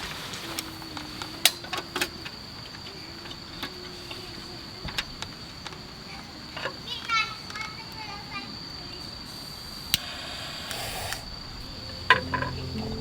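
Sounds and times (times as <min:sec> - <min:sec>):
steady high-pitched tone: 0:10.0 - 0:13.0.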